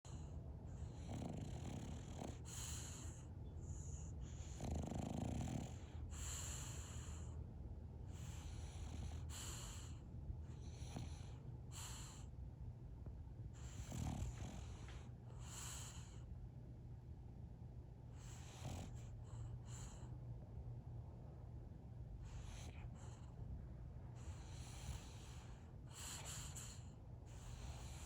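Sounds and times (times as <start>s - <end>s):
dog snoring: 0.1s - 7.4s, 8.1s - 12.3s, 13.5s - 16.3s, 18.1s - 20.1s, 22.2s - 23.4s, 24.1s - 28.0s
dog snorting: 3.8s - 7.2s, 13.6s - 16.1s, 18.2s - 20.0s, 24.2s - 28.0s.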